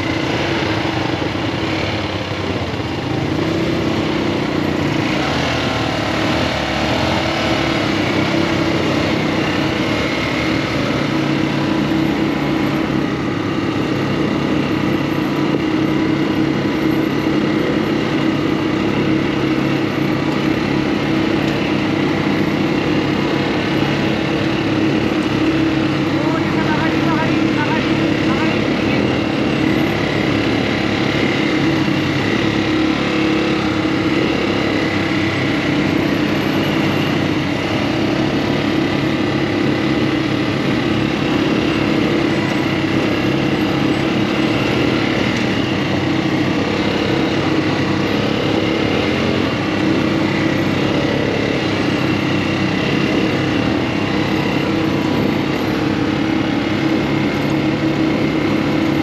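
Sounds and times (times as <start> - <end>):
small engine running steadily: 0.0 - 59.0.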